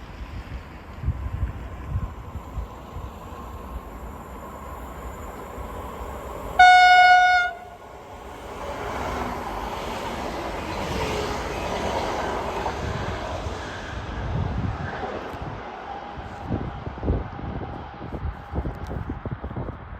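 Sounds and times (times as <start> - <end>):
train rushing past: 0.0 - 18.4
train horn blast: 6.6 - 7.8.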